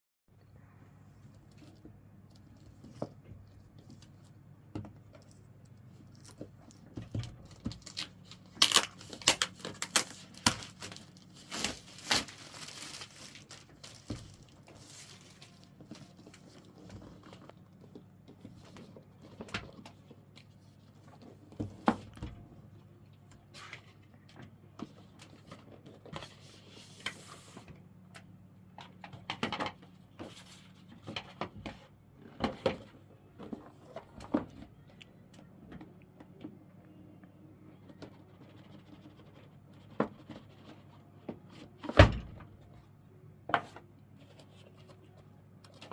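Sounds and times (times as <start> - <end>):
plastic and paper rustling: 5.0 - 22.2.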